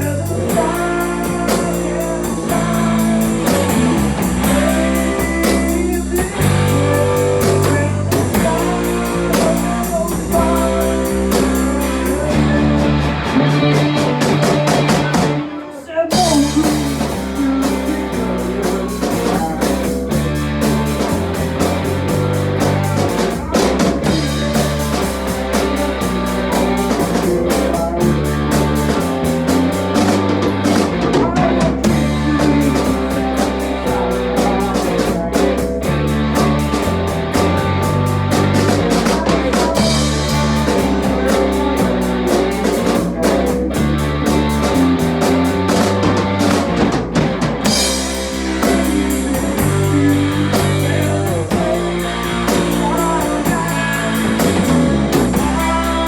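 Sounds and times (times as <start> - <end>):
rock band playing: 0.0 - 56.0.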